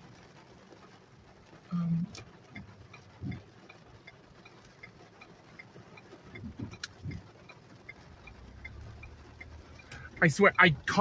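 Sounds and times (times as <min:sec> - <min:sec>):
turn signal ticking: 0:00.0 - 0:11.0
soft low thumps: 0:01.9 - 0:03.7, 0:06.1 - 0:10.2.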